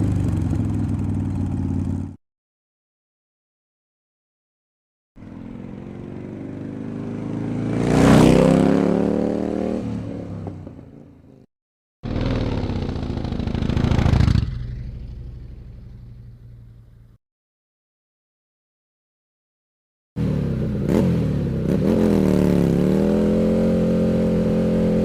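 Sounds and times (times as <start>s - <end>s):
motorcycles passing by: 5.2s - 11.5s, 12.1s - 17.1s, 20.2s - 25.0s.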